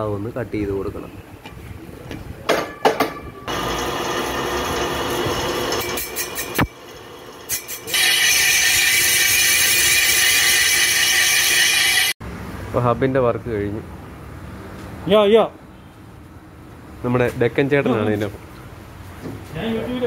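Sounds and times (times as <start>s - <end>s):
lathe cutting metal with ringing: 3.5s - 12.2s.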